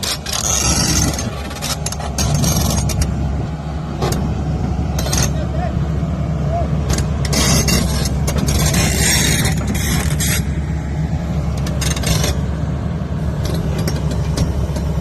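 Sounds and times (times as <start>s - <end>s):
scraping: 0.0s - 3.2s, 7.2s - 10.6s
excavator diesel engine running: 0.0s - 15.0s.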